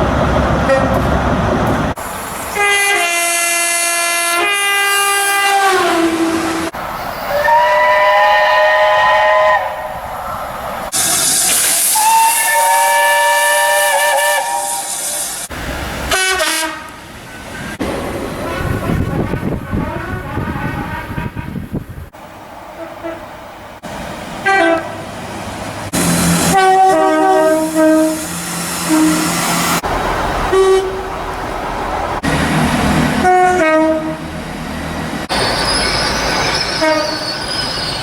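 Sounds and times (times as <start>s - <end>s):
running train noise: 0.0s - 38.0s
train horn blasts: 0.7s - 1.0s, 2.6s - 6.7s, 7.3s - 9.9s, 11.9s - 15.0s, 16.1s - 17.0s, 18.4s - 21.7s, 22.8s - 23.2s, 24.4s - 25.0s, 26.4s - 29.5s, 30.5s - 31.1s, 33.2s - 34.3s, 36.8s - 37.3s.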